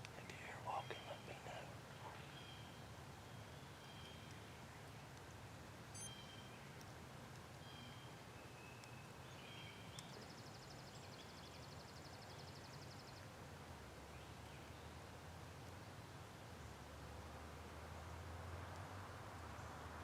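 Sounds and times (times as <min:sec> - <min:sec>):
songbird chirps: 0:00.0 - 0:20.0.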